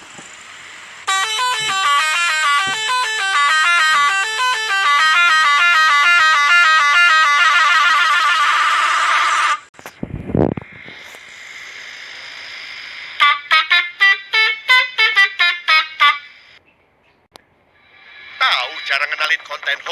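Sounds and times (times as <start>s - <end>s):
multi-trumpet horn playing a tune: 1.1s - 9.6s, 13.2s - 16.3s.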